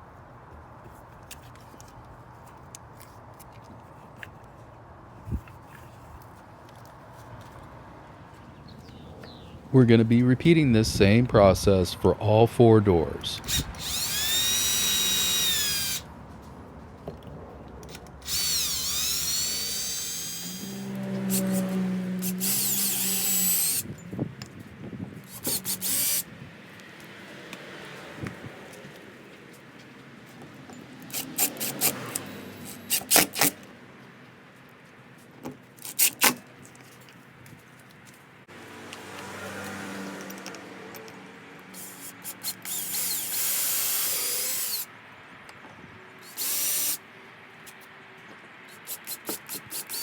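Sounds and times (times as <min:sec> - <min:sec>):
power drill whining: 0:13.4 - 0:16.1, 0:17.9 - 0:23.9, 0:25.3 - 0:26.2, 0:31.1 - 0:33.5, 0:41.7 - 0:44.9, 0:46.2 - 0:47.0, 0:48.7 - 0:50.0.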